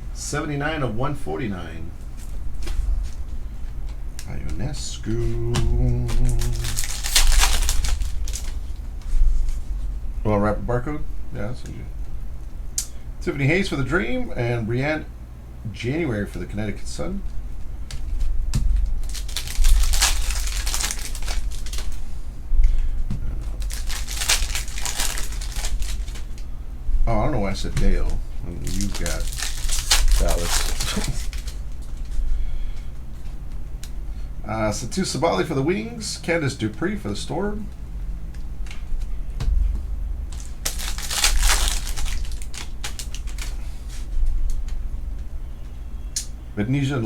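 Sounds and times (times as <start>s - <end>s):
foil wrappers crinkling: 2.0s - 9.9s, 17.9s - 26.5s, 27.4s - 34.0s, 38.4s - 45.3s
cards ticking and clicking: 5.2s - 8.6s, 17.8s - 22.0s, 23.4s - 26.5s, 27.7s - 32.1s, 40.3s - 45.3s.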